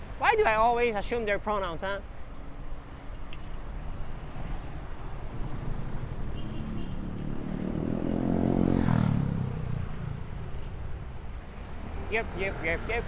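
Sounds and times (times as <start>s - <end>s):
road and wind noise: 0.0s - 13.0s
vehicle engine passing by: 4.3s - 10.3s.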